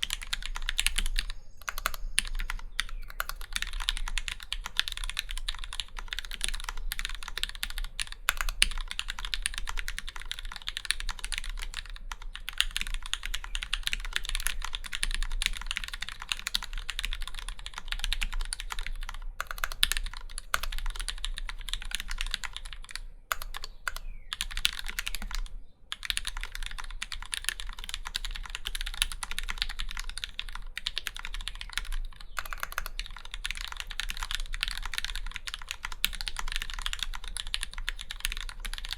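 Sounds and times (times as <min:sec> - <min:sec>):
fast mechanical keyboard typing: 0:00.0 - 0:38.9.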